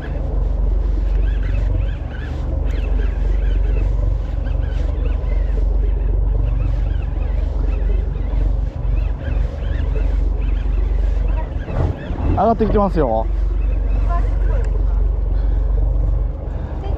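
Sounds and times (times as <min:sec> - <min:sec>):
boat engine running: 0:00.0 - 0:16.9
wind buffeting microphone: 0:00.0 - 0:16.9.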